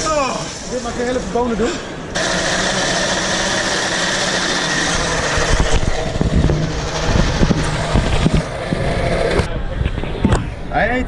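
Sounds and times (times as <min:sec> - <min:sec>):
low hum: 0:01.8 - 0:10.7
coffee grinder grinding beans: 0:02.2 - 0:09.5.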